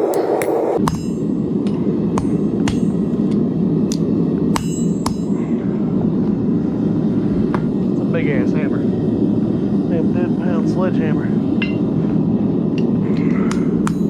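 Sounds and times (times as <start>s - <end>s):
steady rush of noise: 0.0s - 14.0s
hammer striking steel on anvil: 0.1s - 3.3s, 3.9s - 5.4s, 11.6s - 11.9s, 13.5s - 14.0s.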